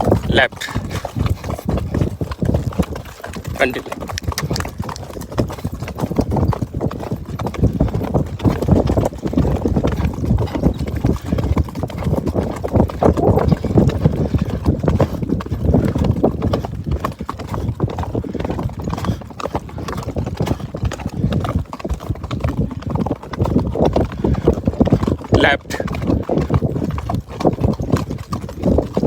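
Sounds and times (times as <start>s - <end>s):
horse hoofbeats on ground: 0.0s - 29.0s.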